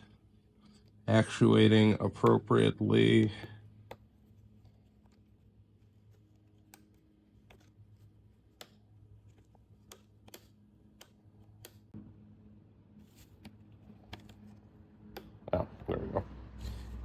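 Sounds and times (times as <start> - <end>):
low steady hum: 0.0 - 17.0
light clicks of small parts: 2.2 - 12.0.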